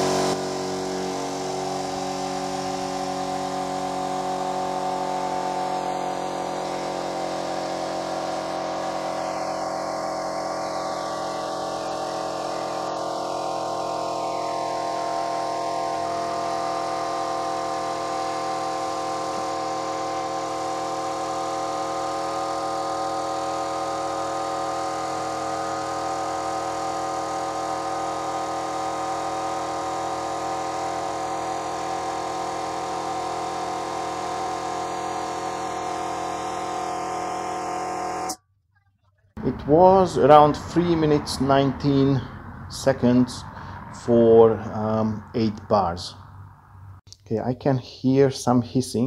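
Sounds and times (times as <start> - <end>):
air compressor running: 0.0 - 38.4, 39.4 - 47.0.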